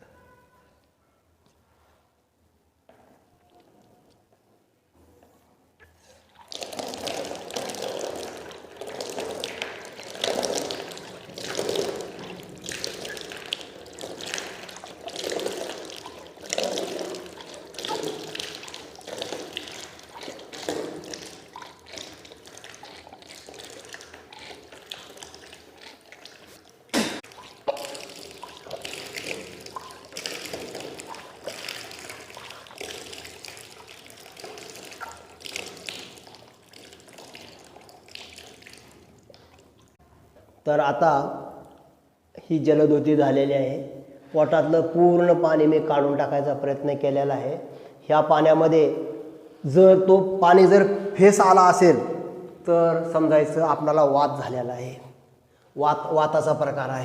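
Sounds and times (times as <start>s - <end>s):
person vomiting water: 5.8s - 39.9s
water splashing down: 6.3s - 40.0s.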